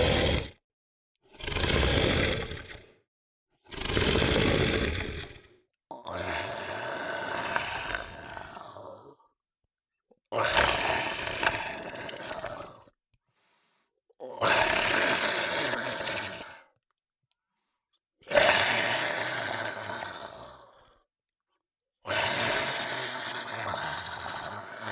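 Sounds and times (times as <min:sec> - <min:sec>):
monster growls: 0:00.0 - 0:00.6, 0:01.3 - 0:03.0, 0:03.7 - 0:09.3, 0:10.3 - 0:12.9, 0:14.2 - 0:16.6, 0:18.3 - 0:20.9, 0:22.1 - 0:24.9.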